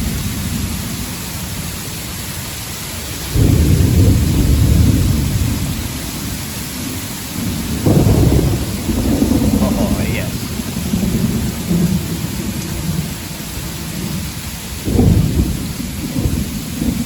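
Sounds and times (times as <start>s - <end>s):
low thunder rumbles: 0.0s - 2.2s, 3.0s - 17.0s
heavy rain pouring: 0.0s - 17.0s.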